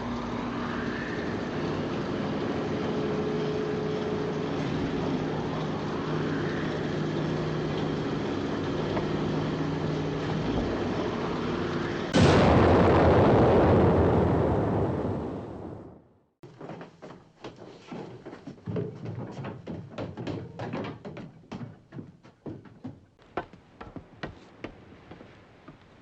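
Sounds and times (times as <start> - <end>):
mechanical engine hum: 0.0 - 12.2
loud rumbling explosion: 12.0 - 16.2.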